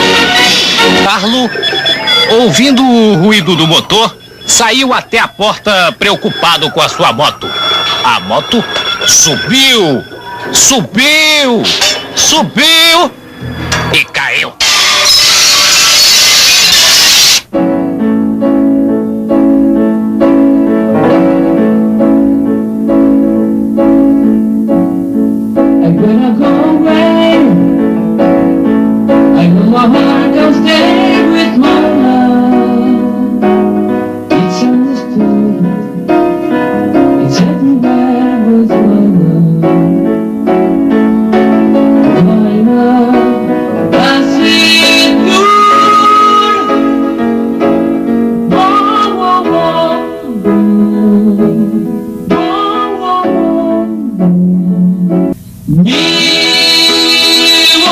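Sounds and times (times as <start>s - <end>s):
piano accompaniment: 0.0s - 14.1s, 17.4s - 57.9s
person singing: 25.7s - 28.3s, 29.1s - 40.2s, 41.8s - 47.4s, 48.5s - 57.9s.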